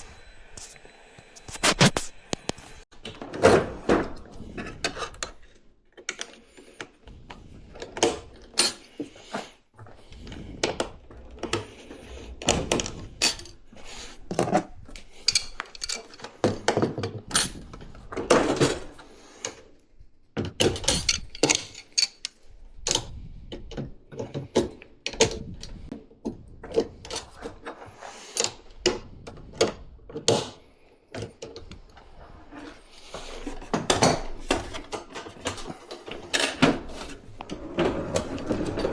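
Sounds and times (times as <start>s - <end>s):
tools and parts clattering: 7.7s - 9.5s, 10.1s - 19.6s, 20.4s - 23.0s, 32.6s - 38.9s.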